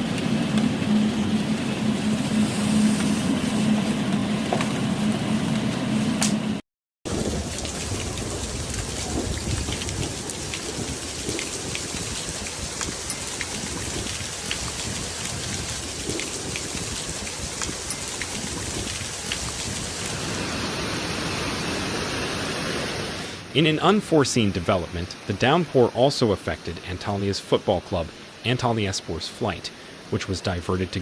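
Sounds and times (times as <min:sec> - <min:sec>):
heavy rain hissing: 0:00.0 - 0:03.8, 0:07.1 - 0:25.0, 0:28.0 - 0:30.4.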